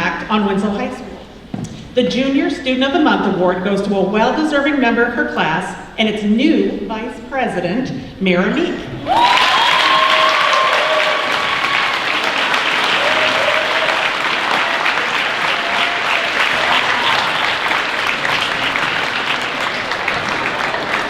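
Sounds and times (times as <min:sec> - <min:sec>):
crowd applauding: 0:09.0 - 0:21.0
people cheering: 0:09.0 - 0:21.0.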